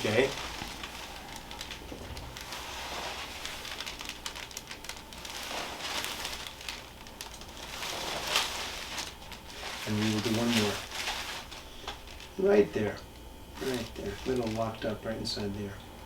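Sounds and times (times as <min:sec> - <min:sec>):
soft rustling: 0:00.0 - 0:12.5, 0:13.5 - 0:14.9.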